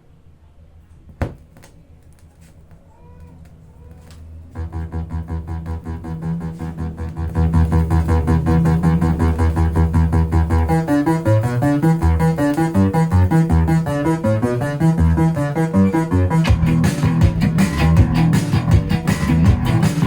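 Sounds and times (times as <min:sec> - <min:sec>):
keyboard melody: 0:04.6 - 0:20.0
pulsing bass: 0:04.6 - 0:20.0
repeating synthesizer pattern: 0:04.6 - 0:20.0.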